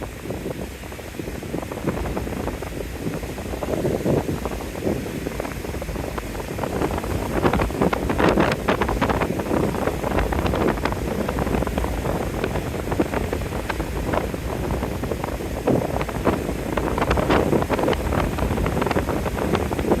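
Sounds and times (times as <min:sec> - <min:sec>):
lake surf: 0:00.0 - 0:20.0
wind blasting microphone: 0:00.0 - 0:20.0.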